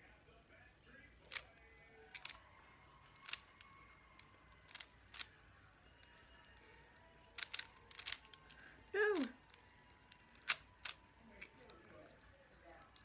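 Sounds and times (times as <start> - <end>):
plastic puzzle cube clicks: 1.3 - 1.5, 2.1 - 2.5, 3.1 - 5.3, 7.2 - 8.6, 9.2 - 11.8.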